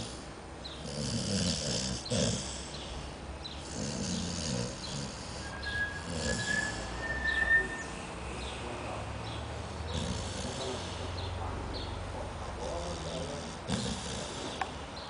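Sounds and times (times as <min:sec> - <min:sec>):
dog breathing while asleep: 0:00.0 - 0:07.0, 0:09.6 - 0:11.5, 0:12.6 - 0:14.8
faint bird chirps: 0:04.8 - 0:09.4
thin high steady tone: 0:05.4 - 0:08.5.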